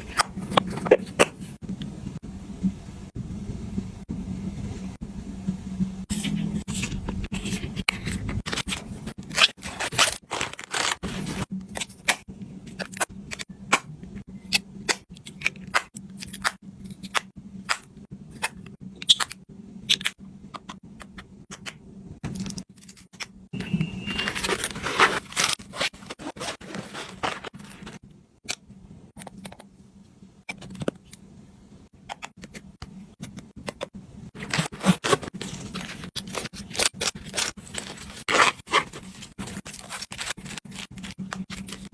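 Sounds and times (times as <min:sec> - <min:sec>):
small clicks taps and scrapes: 0:28.4 - 0:29.7, 0:32.1 - 0:34.0.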